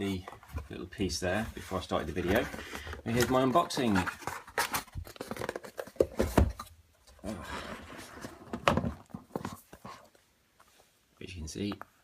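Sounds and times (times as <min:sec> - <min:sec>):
cardboard scraping and rustling: 0:00.1 - 0:06.7.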